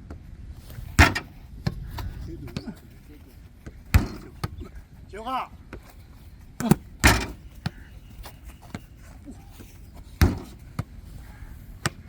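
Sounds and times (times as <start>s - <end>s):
ball thudding on table: 10.2s - 10.6s.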